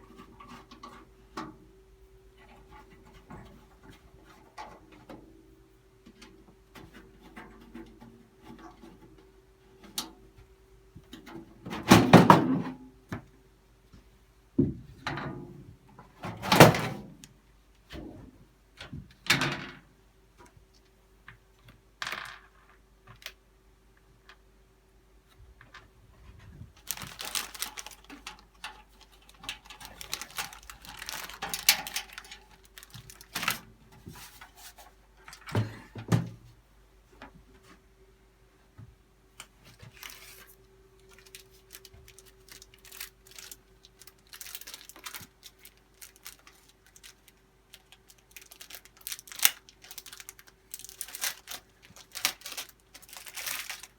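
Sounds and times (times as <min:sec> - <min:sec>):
faint steady hum: 0:00.0 - 0:53.9
packaging rustling: 0:26.8 - 0:34.7, 0:39.8 - 0:53.9.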